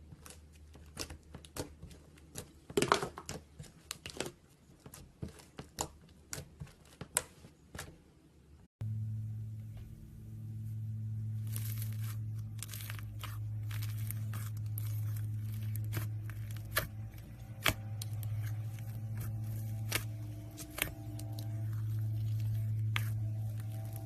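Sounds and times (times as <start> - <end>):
steady low hum: 8.8 - 24.0
slime tearing and crackling: 11.4 - 24.0.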